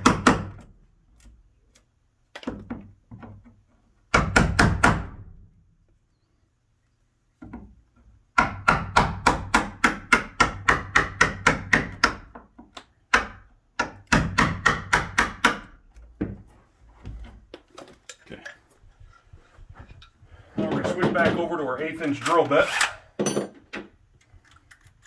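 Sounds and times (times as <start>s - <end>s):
hammer striking chisel into wood: 4.1s - 5.2s, 8.4s - 12.4s, 13.1s - 15.8s.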